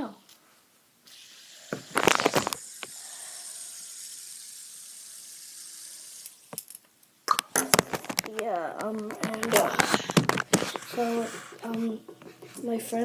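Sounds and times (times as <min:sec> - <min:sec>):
fidget spinner whirring: 0:01.1 - 0:06.6
fidget spinner clicks and rattles: 0:01.9 - 0:06.8.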